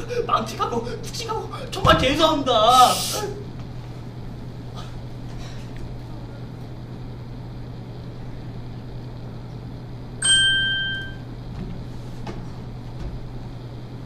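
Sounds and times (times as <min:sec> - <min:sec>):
steady low hum: 0:00.0 - 0:14.0
bright bell ding: 0:10.2 - 0:11.2.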